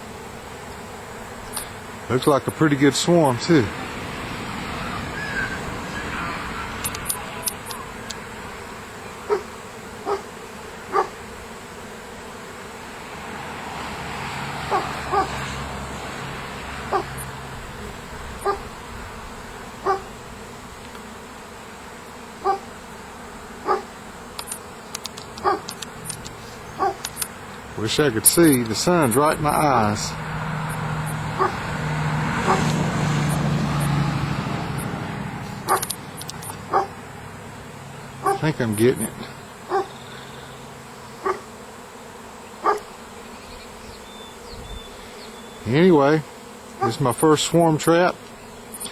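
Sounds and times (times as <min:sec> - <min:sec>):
bees buzzing: 0:00.0 - 0:48.9
dog barking: 0:09.2 - 0:10.3, 0:10.9 - 0:11.2, 0:14.7 - 0:15.4, 0:16.9 - 0:17.2, 0:18.4 - 0:18.7, 0:19.8 - 0:20.1, 0:22.4 - 0:22.7, 0:23.6 - 0:23.9, 0:25.4 - 0:25.8, 0:26.8 - 0:27.2, 0:31.3 - 0:31.7, 0:32.4 - 0:32.8, 0:35.6 - 0:35.9, 0:36.6 - 0:37.0, 0:38.2 - 0:38.4, 0:39.7 - 0:40.0, 0:41.2 - 0:41.5, 0:42.6 - 0:42.9, 0:46.8 - 0:47.0.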